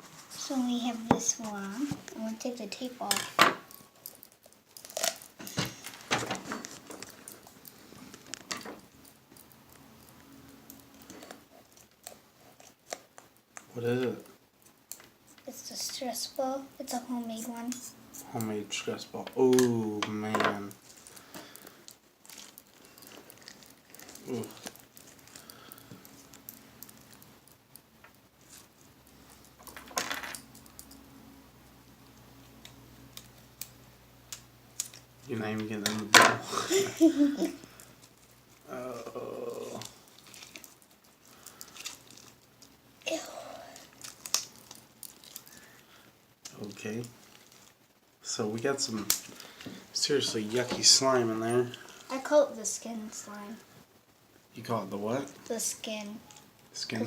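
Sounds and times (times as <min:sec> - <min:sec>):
handling crackles and scrapes: 0:00.0 - 0:13.7, 0:19.2 - 0:31.0, 0:39.7 - 0:54.0
tape being peeled: 0:03.7 - 0:13.7, 0:20.8 - 0:27.8, 0:32.4 - 0:50.8.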